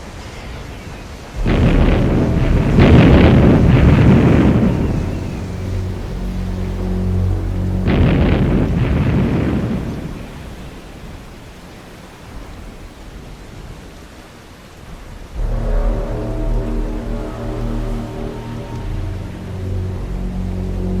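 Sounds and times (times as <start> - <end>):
steady low drone: 1.4 - 10.9, 15.3 - 21.0
loud explosion: 1.4 - 11.3
faint low rumble: 1.4 - 13.1, 15.2 - 21.0.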